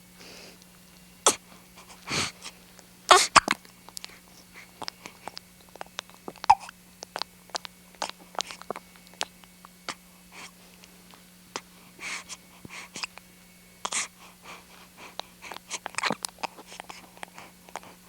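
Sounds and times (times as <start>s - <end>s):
steady low hum: 0.0s - 18.0s
child breathing quietly: 0.1s - 0.6s, 1.4s - 2.6s, 10.0s - 10.8s, 11.6s - 13.2s, 13.8s - 18.0s.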